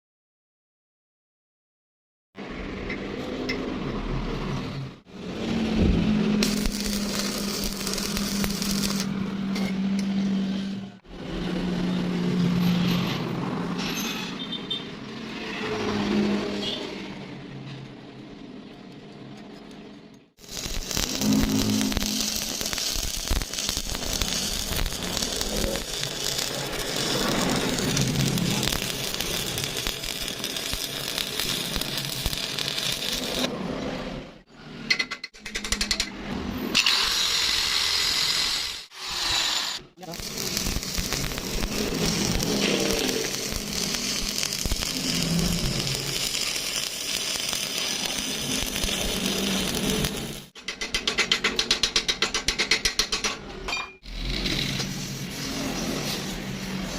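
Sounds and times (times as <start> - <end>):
welding arc crackling: 5.2 - 9.7, 20.4 - 33.5, 36.8 - 50.6.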